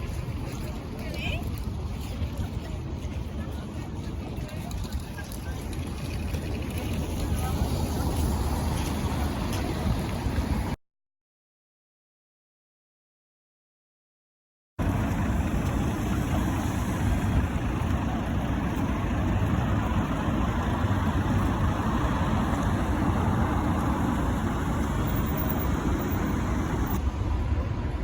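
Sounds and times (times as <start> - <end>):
low vehicle rumble: 14.8 - 28.0.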